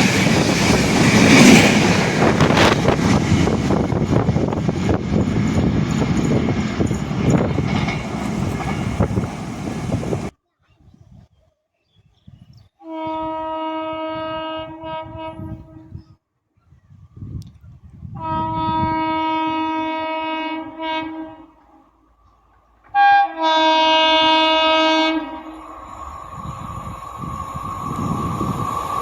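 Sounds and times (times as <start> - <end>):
fast train rushing past: 0.0 - 10.3, 23.4 - 29.0
train horn blasts: 12.8 - 16.0, 18.2 - 21.9, 22.9 - 26.6.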